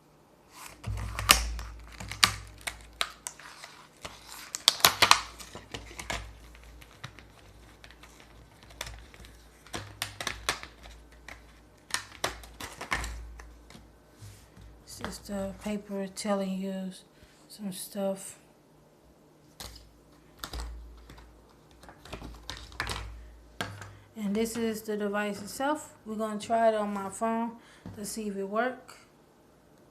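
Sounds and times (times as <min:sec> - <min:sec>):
packaging clicks and taps: 0:04.0 - 0:13.8, 0:20.4 - 0:24.7.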